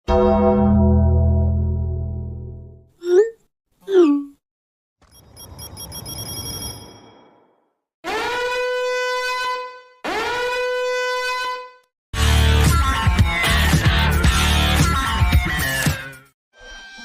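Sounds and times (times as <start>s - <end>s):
horn-like blasts: 8.1s - 11.6s.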